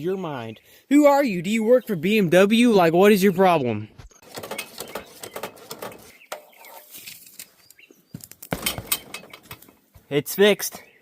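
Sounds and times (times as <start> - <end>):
metal clatter: 4.2 - 7.2, 8.4 - 9.8.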